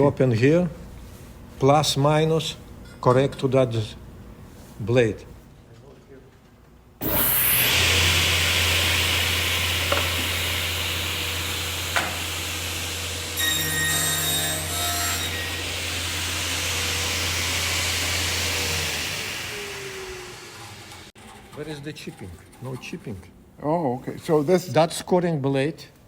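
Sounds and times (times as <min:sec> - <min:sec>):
ringing saw whine: 0:07.0 - 0:21.9
table saw cutting a board: 0:07.0 - 0:21.9.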